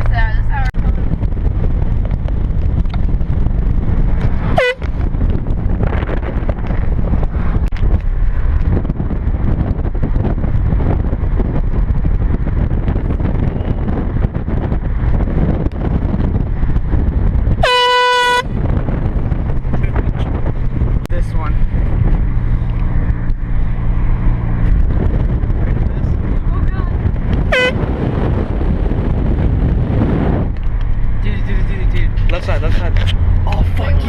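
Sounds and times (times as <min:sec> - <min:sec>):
moving car rumble: 0:00.0 - 0:34.0
air horn blast: 0:04.5 - 0:05.0, 0:17.6 - 0:18.5, 0:27.4 - 0:28.0.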